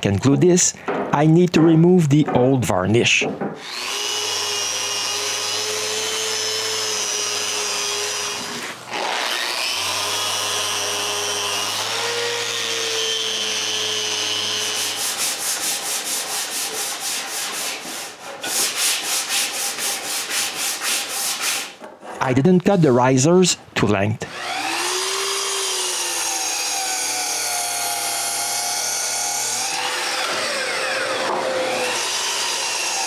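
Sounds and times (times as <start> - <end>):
hand sanding wood: 14.4 - 21.8
electric sander running: 24.3 - 33.0.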